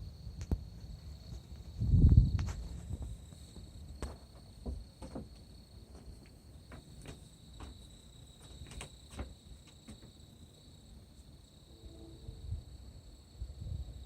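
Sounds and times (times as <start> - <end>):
night insects trilling: 0.0 - 14.0
footsteps crunching: 1.3 - 10.1.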